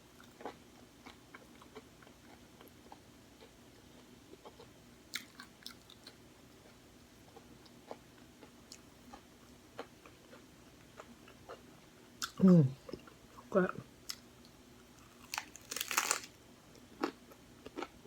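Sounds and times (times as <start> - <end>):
chewing crunchy taco shell: 0.2 - 13.2, 15.0 - 18.0.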